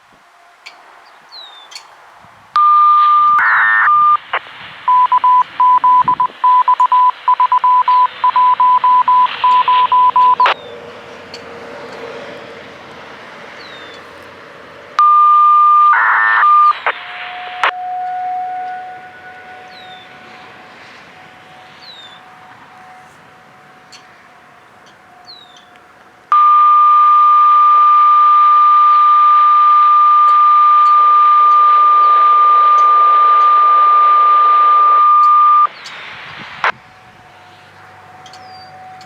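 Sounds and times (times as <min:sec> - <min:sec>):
radio hiss: 0:02.5 - 0:10.7, 0:15.0 - 0:38.2
rapid short beeps: 0:02.6 - 0:10.6, 0:15.0 - 0:20.2, 0:26.3 - 0:36.0
steady radio beep: 0:02.6 - 0:10.6, 0:15.0 - 0:24.0, 0:26.3 - 0:37.0
siren low steady tone: 0:02.6 - 0:11.4, 0:15.0 - 0:39.0
warbling chirp: 0:15.0 - 0:24.1.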